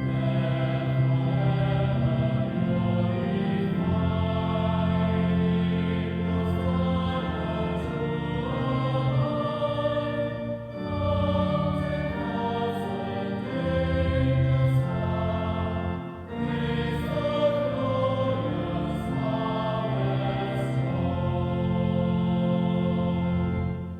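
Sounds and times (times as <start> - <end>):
choir singing sustained chords: 0.0 - 23.9.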